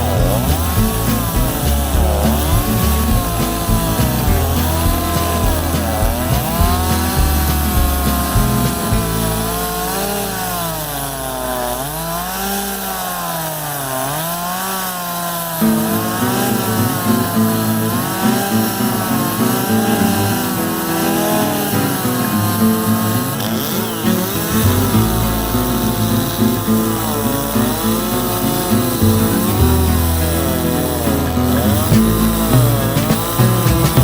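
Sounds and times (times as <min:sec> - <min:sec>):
background music: 0:00.0 - 0:11.9
chainsaw cutting wood: 0:00.0 - 0:34.0.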